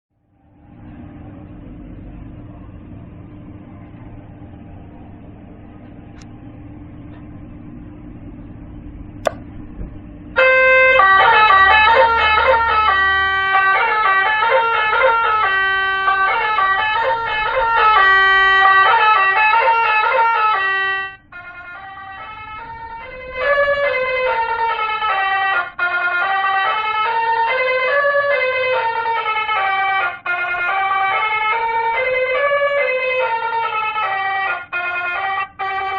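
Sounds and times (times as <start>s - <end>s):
multi-tone horn melodies: 10.4s - 35.9s.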